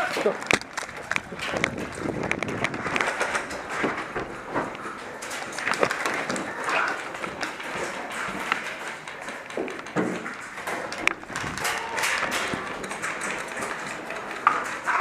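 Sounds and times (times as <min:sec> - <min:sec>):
gear rustling: 0:00.0 - 0:15.0
sharp clicks and knocks: 0:00.0 - 0:15.0
footsteps on dirt: 0:00.5 - 0:08.5.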